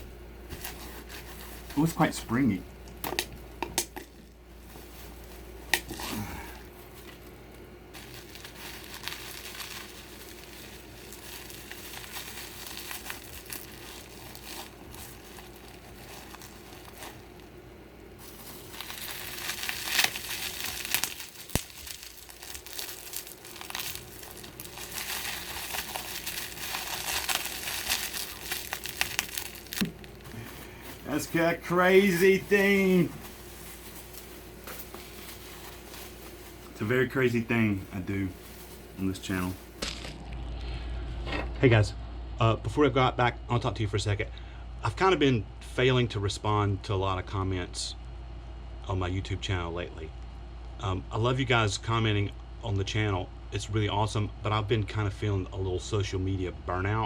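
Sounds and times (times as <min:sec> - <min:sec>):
bubble wrap crinkling: 0:00.0 - 0:39.8.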